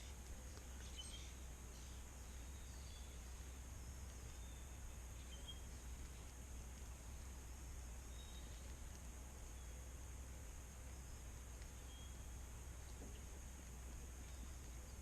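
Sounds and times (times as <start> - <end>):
bird chirps: 0.0 - 6.4, 8.0 - 9.9, 10.9 - 13.1
low hum and hiss: 0.0 - 15.0.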